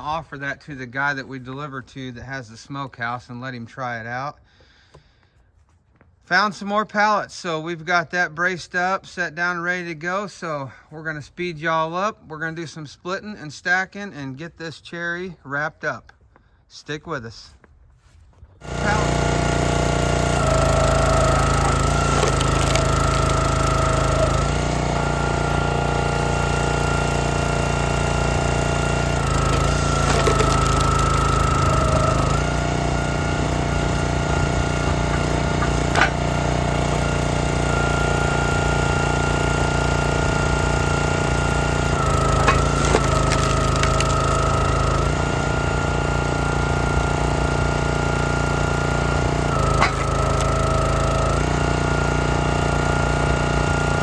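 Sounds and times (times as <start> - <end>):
small gasoline engine running: 18.6 - 54.0
sharp wood knocks: 49.8 - 50.1.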